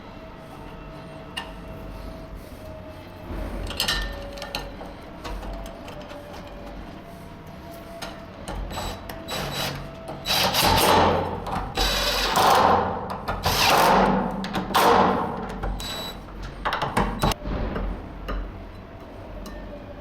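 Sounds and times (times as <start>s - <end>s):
power drill drilling metal: 8.7s - 12.8s, 13.4s - 14.1s.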